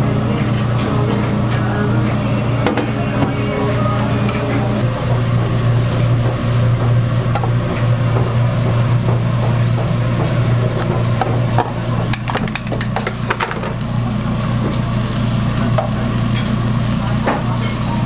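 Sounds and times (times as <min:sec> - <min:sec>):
egg sizzling in a pan: 0:12.1 - 0:18.0.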